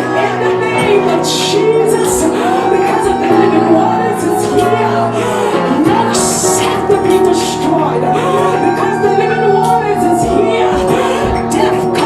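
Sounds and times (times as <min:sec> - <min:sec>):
worship music with singing: 0:00.0 - 0:12.0.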